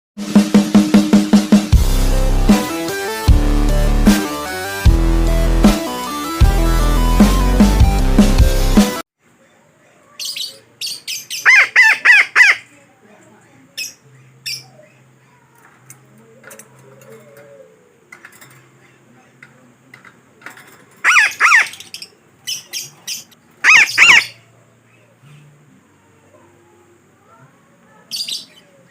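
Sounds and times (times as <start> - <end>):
parakeet squawks: 10.2 - 12.7, 21.0 - 24.5, 28.1 - 28.6.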